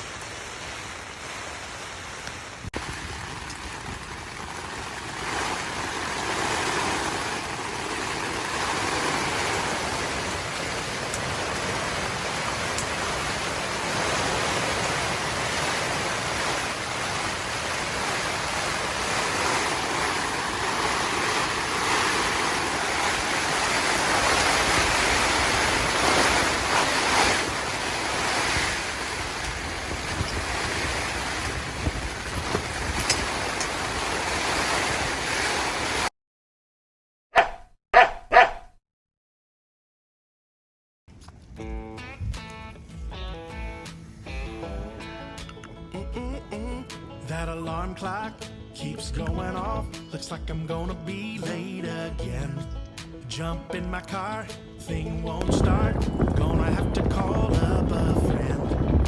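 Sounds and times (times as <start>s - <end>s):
rain: 0.0s - 36.1s
storm wind: 2.5s - 36.1s, 55.4s - 59.0s.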